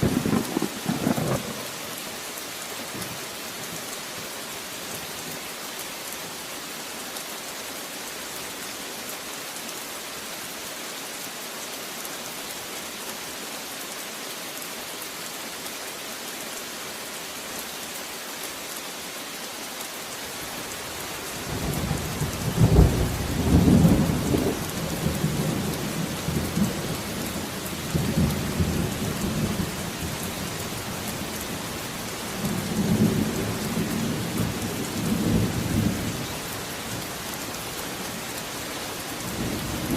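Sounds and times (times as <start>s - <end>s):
rolling thunder rumble: 0.0s - 1.8s
heavy rain: 0.0s - 39.9s.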